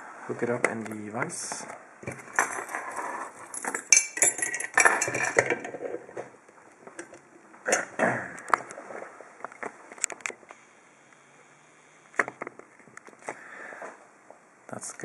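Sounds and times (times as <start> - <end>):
metal clinking and scraping: 2.0 - 6.3.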